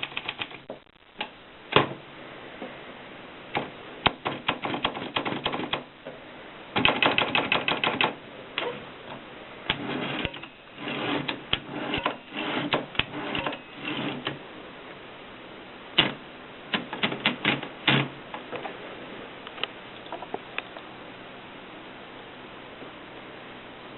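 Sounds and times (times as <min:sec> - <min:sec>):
typewriter keys clicking: 0:00.0 - 0:00.6, 0:06.8 - 0:08.2.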